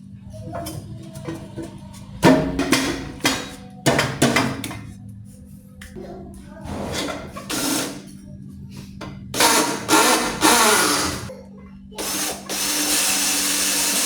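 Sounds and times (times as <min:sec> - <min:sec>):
small electric machine running in bursts: 0:07.0 - 0:08.1, 0:09.4 - 0:11.3, 0:12.0 - 0:14.0.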